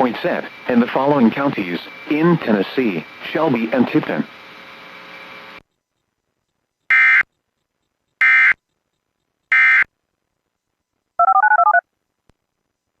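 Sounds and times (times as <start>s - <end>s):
harsh digital data bursts: 9.5s - 9.9s
dual-tone touch-tone beeps: 11.2s - 11.8s.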